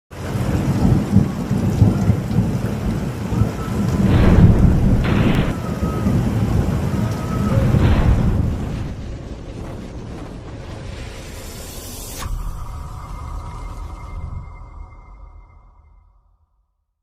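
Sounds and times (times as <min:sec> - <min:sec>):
heavy rain: 0:00.1 - 0:12.1
strong wind: 0:00.1 - 0:12.2
deep rumble: 0:01.1 - 0:15.8.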